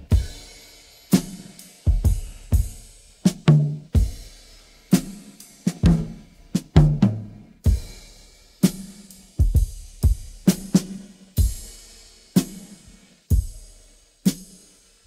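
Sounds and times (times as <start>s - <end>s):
drum strikes: 3.3s - 11.6s.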